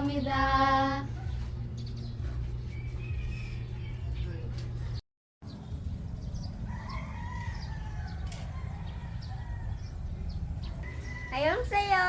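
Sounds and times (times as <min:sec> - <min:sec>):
small birds chirping: 0:00.0 - 0:12.0
rooster crowing: 0:06.5 - 0:11.8.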